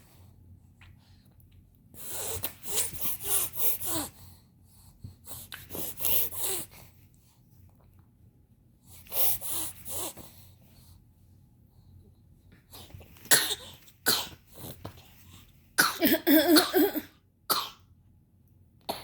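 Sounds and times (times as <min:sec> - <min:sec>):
harsh coughing: 0:15.8 - 0:17.8.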